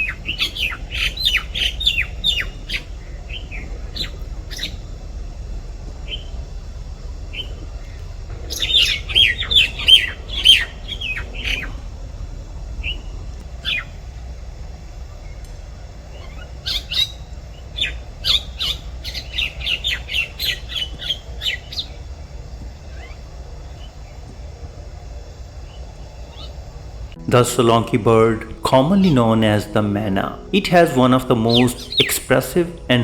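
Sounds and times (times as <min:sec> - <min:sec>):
myna calling: 0:00.0 - 0:14.1, 0:15.1 - 0:24.0, 0:25.3 - 0:33.0.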